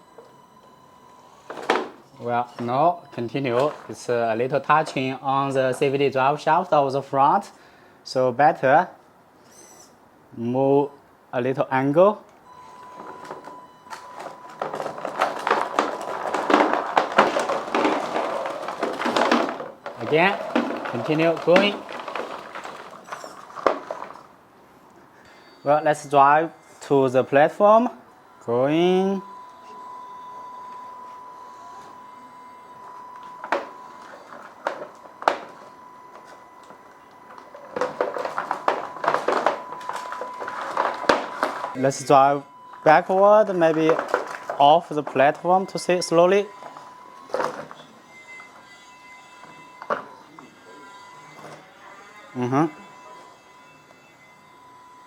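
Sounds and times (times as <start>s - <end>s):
rc truck clattering over rocks: 3.4s - 6.1s, 13.2s - 24.3s, 33.4s - 42.1s, 42.9s - 47.8s
steady high tone: 44.6s - 55.0s.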